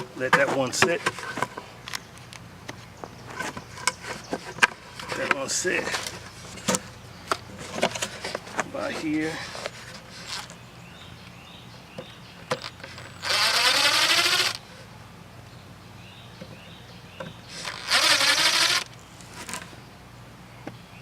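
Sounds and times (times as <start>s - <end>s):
cordless drill running: 13.2s - 14.6s, 17.5s - 19.0s.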